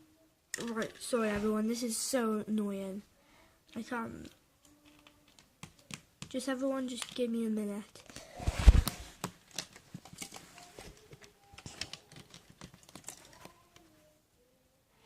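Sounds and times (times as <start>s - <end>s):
plastic bricks clicking and clattering: 0.5s - 1.2s, 4.2s - 8.2s, 9.1s - 13.6s.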